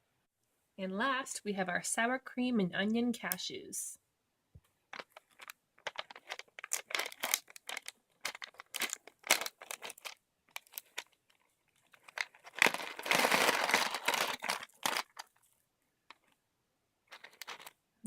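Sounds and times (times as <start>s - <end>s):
snack packaging crinkling: 4.9s - 16.4s, 17.1s - 17.8s.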